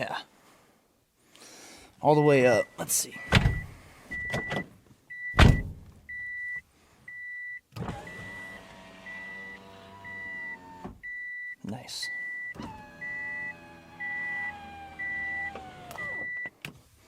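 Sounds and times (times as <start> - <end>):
car warning chime beeping: 2.5 - 16.6
power window motor hum: 7.8 - 11.0, 12.5 - 16.4.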